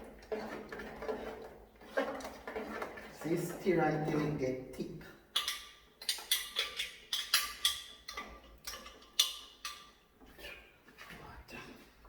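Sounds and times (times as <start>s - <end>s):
spoon scraping cooking pot: 0.0s - 4.5s, 5.4s - 11.1s.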